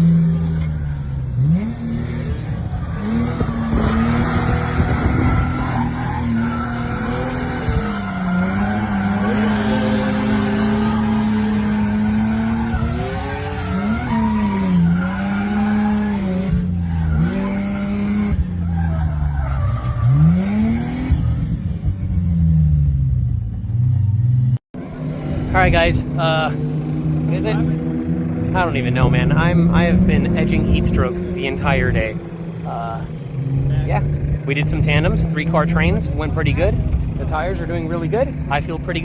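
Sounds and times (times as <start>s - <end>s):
car engine revving: 0.0s - 39.0s
tires squealing and skidding: 0.3s - 21.7s.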